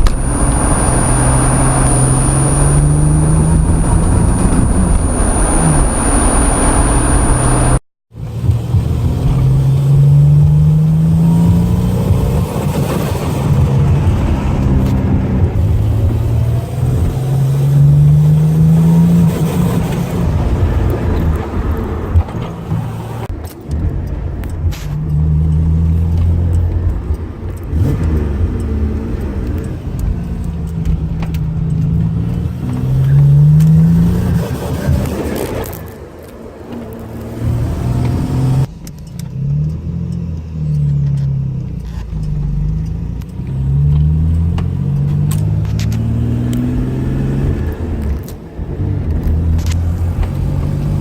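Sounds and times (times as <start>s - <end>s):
car engine revving and misfiring: 0.0s - 51.0s.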